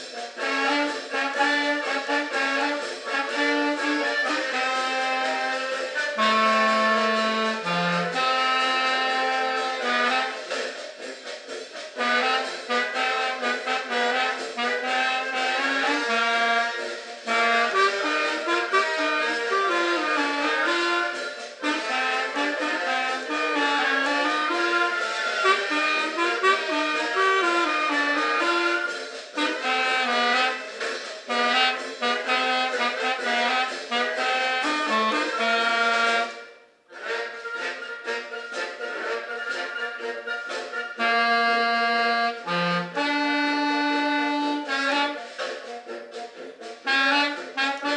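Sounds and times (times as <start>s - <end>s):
instrumental melody: 0.0s - 47.9s.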